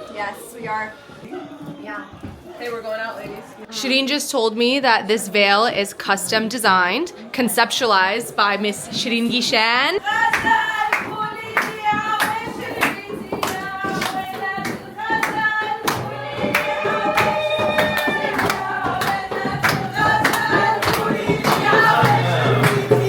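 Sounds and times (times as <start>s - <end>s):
voices singing together: 0.0s - 3.7s, 5.1s - 23.0s
steady drum beat: 9.0s - 23.0s.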